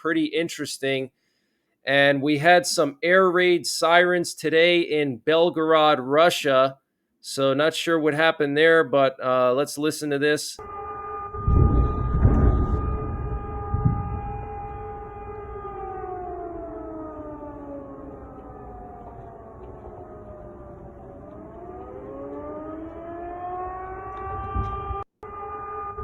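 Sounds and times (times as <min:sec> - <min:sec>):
air raid siren wailing: 0:10.6 - 0:26.0.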